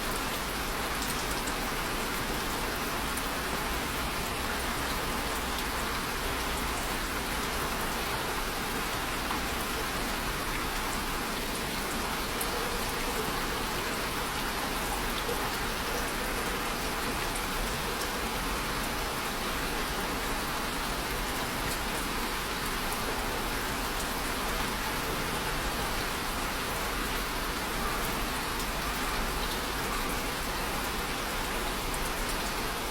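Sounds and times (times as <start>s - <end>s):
rain pattering: 0.0s - 32.9s.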